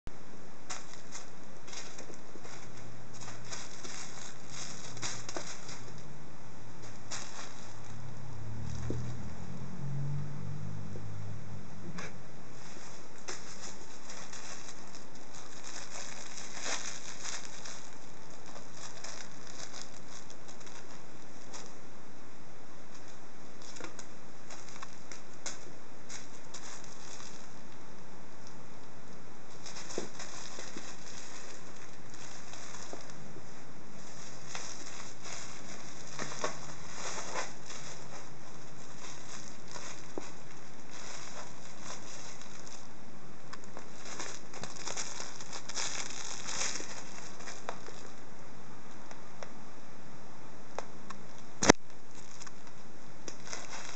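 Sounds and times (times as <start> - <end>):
crinkle toy rustling: 0.6 - 6.1, 6.7 - 9.4, 12.5 - 21.9, 22.8 - 28.5, 29.4 - 48.3, 51.6 - 53.9.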